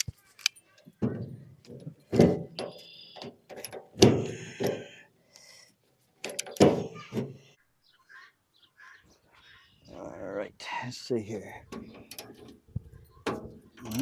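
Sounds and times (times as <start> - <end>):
metal wheelbarrow parts clanking: 0.0 - 4.9, 11.7 - 12.6, 13.2 - 14.0.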